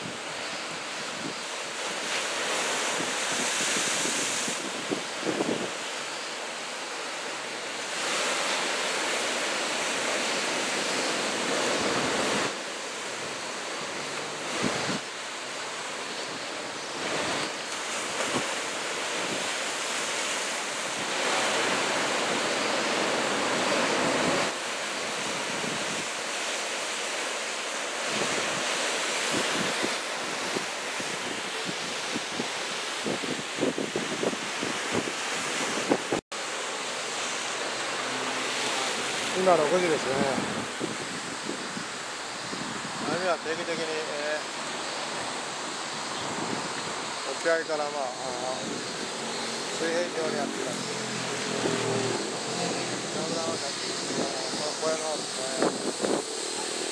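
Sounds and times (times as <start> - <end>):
ocean waves breaking: 0.0 - 56.9
wind buffeting microphone: 29.3 - 36.2, 39.8 - 43.2, 50.2 - 56.9.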